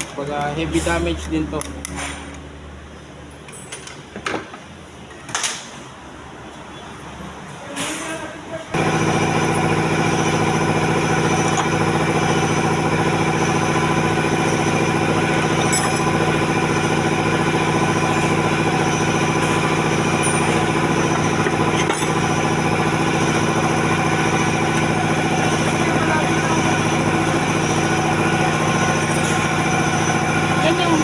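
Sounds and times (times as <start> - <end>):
engine humming steadily: 8.7 - 31.0.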